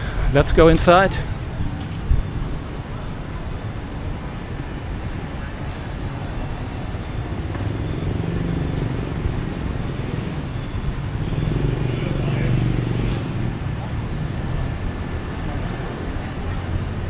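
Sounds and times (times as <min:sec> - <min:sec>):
street traffic: 0:00.0 - 0:17.0
vehicle engine hum: 0:06.1 - 0:17.0.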